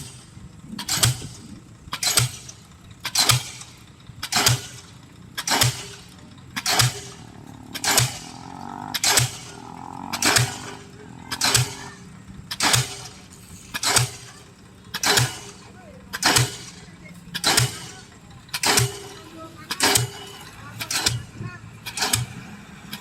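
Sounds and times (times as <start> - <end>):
rig engine running: 0.0 - 23.0
pile driver hammer blows: 0.8 - 23.0.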